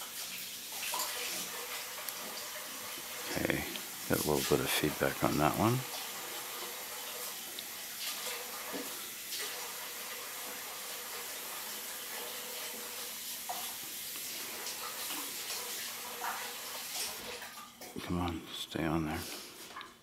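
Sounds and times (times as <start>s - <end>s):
steady hiss: 1.3s - 8.1s.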